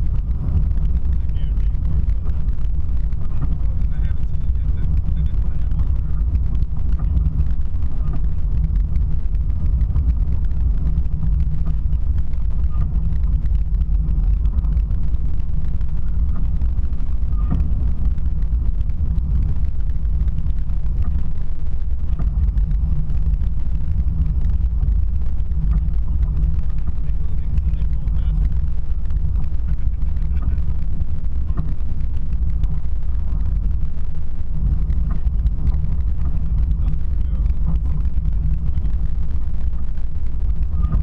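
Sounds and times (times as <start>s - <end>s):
vehicle engine low rumble: 0.0s - 41.0s.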